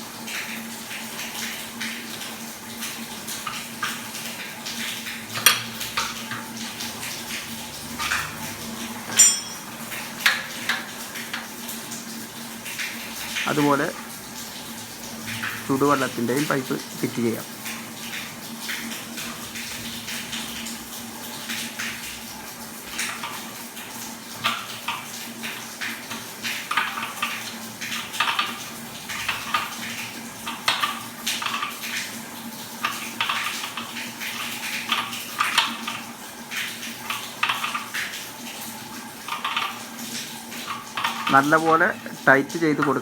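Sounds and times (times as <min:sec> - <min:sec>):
metal pipe fittings clinking: 0:05.3 - 0:06.2, 0:09.0 - 0:10.8.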